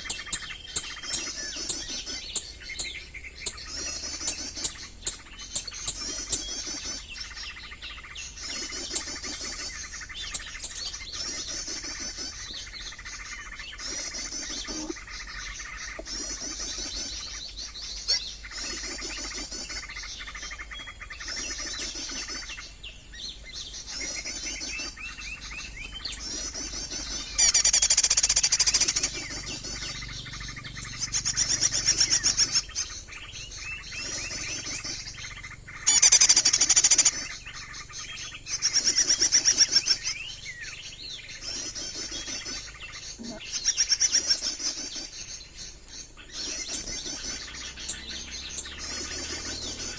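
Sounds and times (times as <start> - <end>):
rapid high bird trills: 0.0 - 49.9
songbird chirping through speaker: 0.0 - 49.9.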